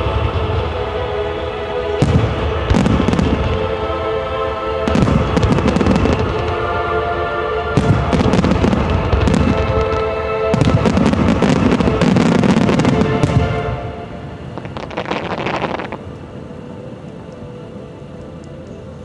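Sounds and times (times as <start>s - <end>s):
music playing: 0.0s - 19.0s
fireworks bursting and crackling: 1.9s - 3.8s, 4.8s - 6.7s, 7.8s - 16.2s.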